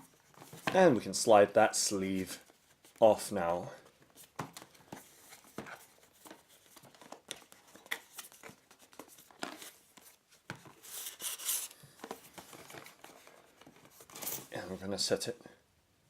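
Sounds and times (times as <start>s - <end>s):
handling rustles: 3.8s - 14.8s.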